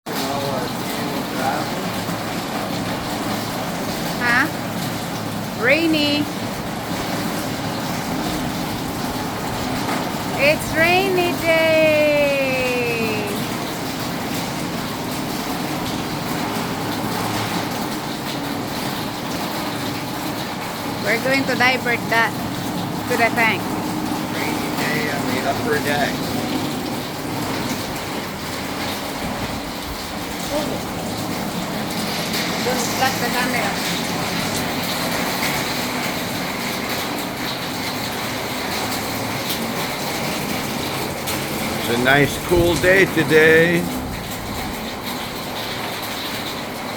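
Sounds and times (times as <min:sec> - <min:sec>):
heavy rain on a roof: 0:00.0 - 0:46.9.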